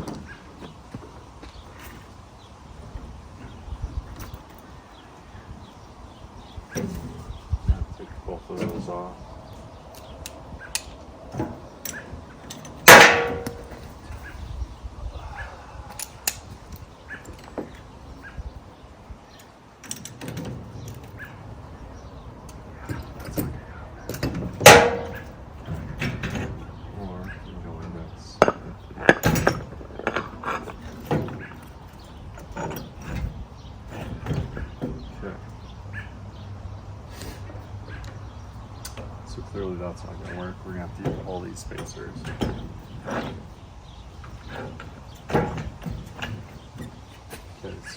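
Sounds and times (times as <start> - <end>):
metal parts clicking: 9.9 - 14.5, 19.3 - 21.3
small metal parts clanking: 9.9 - 14.6, 19.3 - 26.8, 28.3 - 36.1, 40.2 - 47.9
loud metallic clang: 12.6 - 14.2, 24.2 - 26.5.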